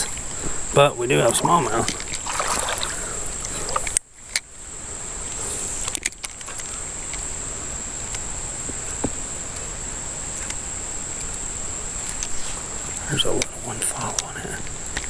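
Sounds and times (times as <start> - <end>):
mountain creek rushing: 0.0 - 3.9
thin high whine: 0.0 - 15.0.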